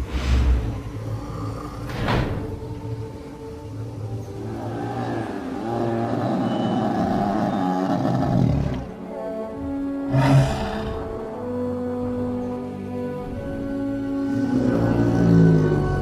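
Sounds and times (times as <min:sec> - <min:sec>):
dinosaur roar: 0:00.0 - 0:02.0, 0:04.5 - 0:09.0, 0:10.1 - 0:11.3, 0:14.3 - 0:16.0
background music: 0:00.0 - 0:16.0.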